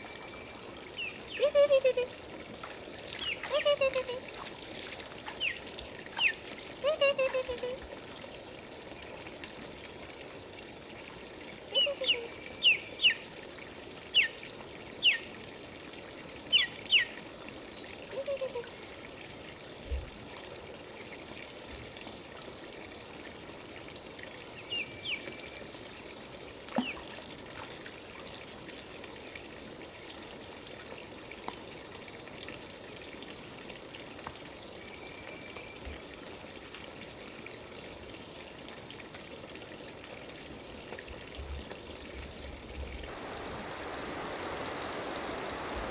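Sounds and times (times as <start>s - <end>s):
stream trickling: 0.0s - 45.9s
high-pitched hiss: 42.4s - 45.9s.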